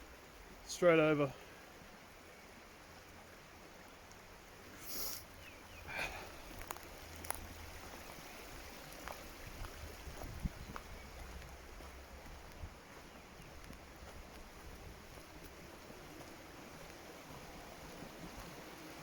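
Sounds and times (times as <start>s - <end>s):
short hiss: 4.7s - 5.3s.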